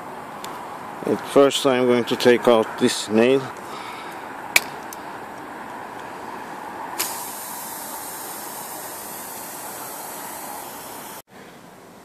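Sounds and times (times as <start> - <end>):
air hissing from tyre: 6.1 - 11.3.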